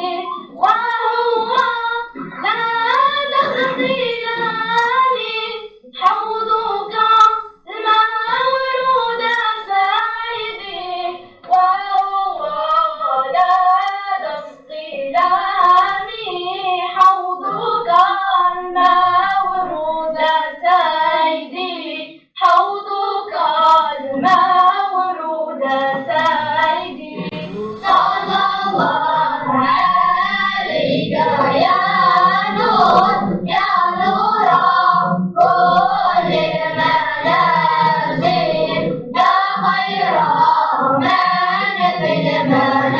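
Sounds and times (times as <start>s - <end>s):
children singing in unison: 0.0s - 42.9s
sharp hand claps: 1.5s - 1.8s.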